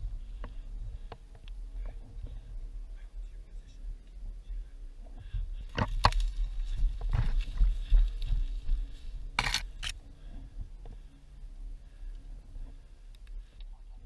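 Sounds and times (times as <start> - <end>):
wind rumble: 0.0 - 14.0
microphone handling noise: 5.0 - 9.9
rustling through undergrowth: 5.2 - 11.2.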